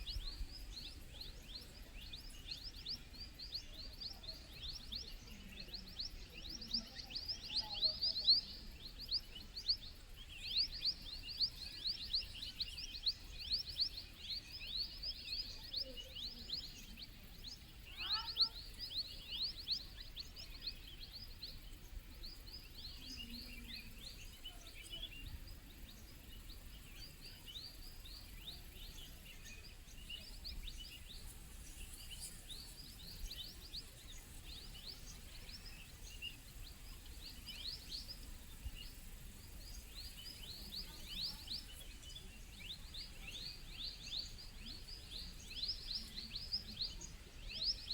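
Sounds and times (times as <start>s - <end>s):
birds chirping: 0.0s - 47.9s.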